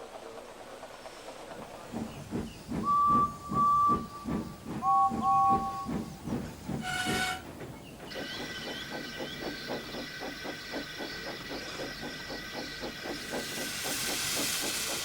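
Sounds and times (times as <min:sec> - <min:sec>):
steam locomotive chuffing: 0:00.0 - 0:15.0
train whistle blowing: 0:04.8 - 0:05.9, 0:06.8 - 0:07.5
steam hissing blast: 0:13.1 - 0:15.0.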